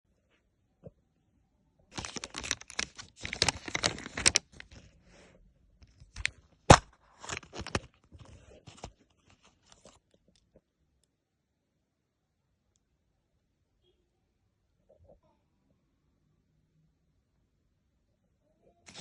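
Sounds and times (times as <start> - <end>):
packaging being torn and crinkled: 1.9 - 4.9, 6.0 - 9.9.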